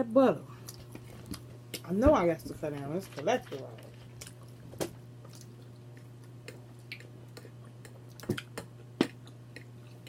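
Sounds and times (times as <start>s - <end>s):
steady low hum: 0.0s - 10.0s
chewing with wet smacks: 4.1s - 4.6s, 5.2s - 10.0s.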